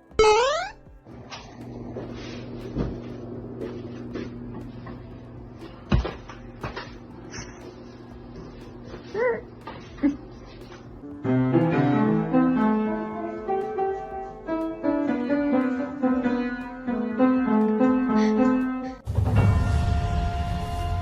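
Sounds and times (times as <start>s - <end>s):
piano music with chords: 0.0s - 21.0s
dense music: 19.0s - 21.0s.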